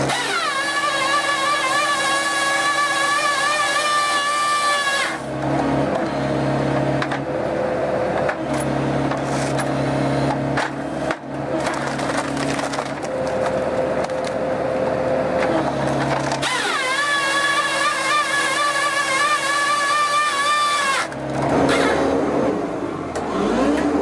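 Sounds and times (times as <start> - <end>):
machine engine and hydraulics: 0.0 - 24.0
wood cracking and splintering: 11.5 - 14.4, 15.9 - 19.3.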